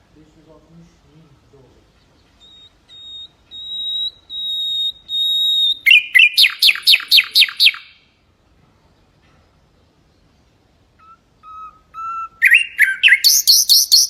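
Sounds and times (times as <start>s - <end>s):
bird singing whistled notes: 1.6s - 8.2s, 11.0s - 14.0s.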